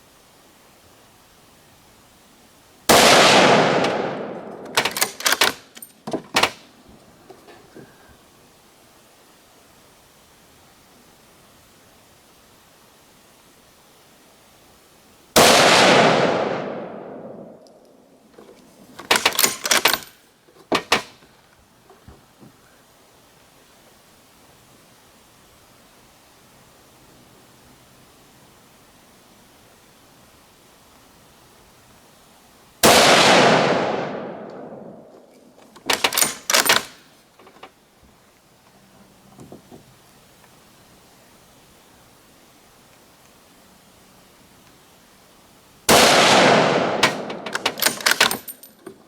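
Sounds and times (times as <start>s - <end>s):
rifle shot with echo: 2.9s - 5.6s, 15.4s - 17.7s, 32.8s - 35.1s, 45.9s - 48.4s
rifle bolt metallic clicks: 3.7s - 6.6s, 17.6s - 20.1s, 35.7s - 37.6s, 46.7s - 49.0s.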